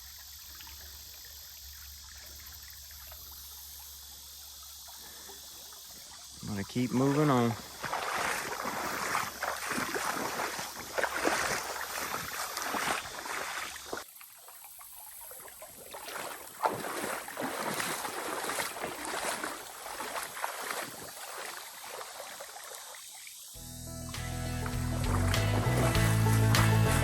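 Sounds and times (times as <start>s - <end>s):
footsteps splashing through water: 6.0s - 23.4s, 24.4s - 27.0s.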